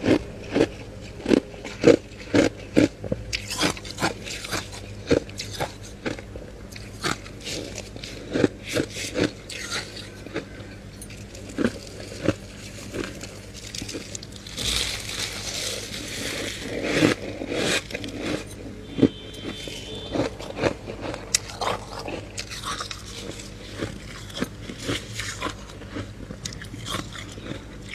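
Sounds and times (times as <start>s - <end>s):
crunching bites of frost: 11.1s - 18.5s
scraping frost: 11.6s - 18.6s.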